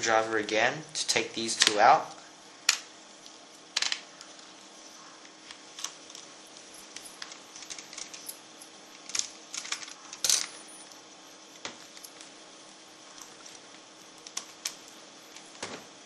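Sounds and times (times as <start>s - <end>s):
small parts clattering: 5.4s - 11.0s.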